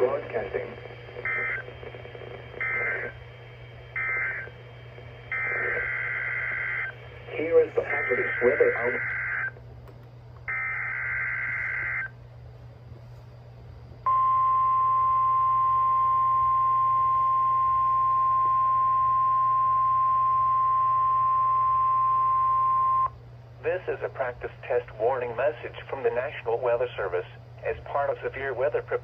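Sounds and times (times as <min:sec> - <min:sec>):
steady warning alarm tone: 0:01.2 - 0:01.7, 0:02.6 - 0:04.6, 0:05.2 - 0:09.6, 0:10.5 - 0:12.2, 0:14.1 - 0:23.1.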